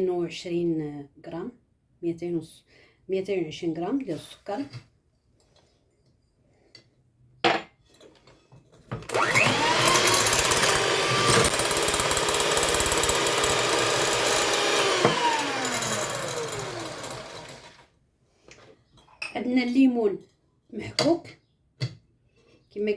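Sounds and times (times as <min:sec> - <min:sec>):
electric mixer motor: 0:09.0 - 0:17.9.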